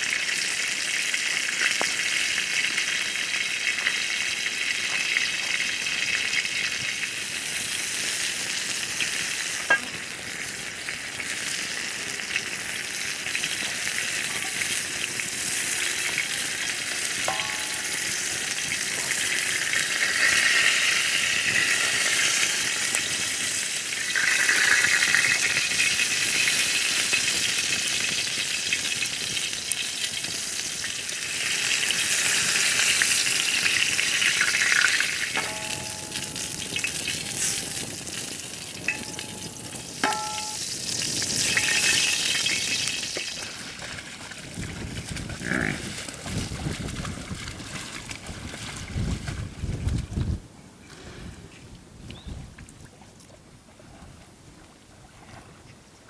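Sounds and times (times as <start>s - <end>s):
food sizzling in a pan: 0.0s - 43.7s.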